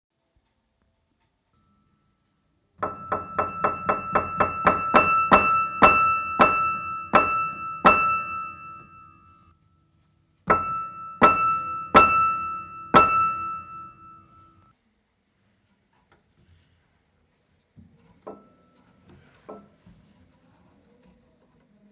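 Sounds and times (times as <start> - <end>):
high instrument note with wooden knock: 2.8 - 9.4, 10.5 - 14.7.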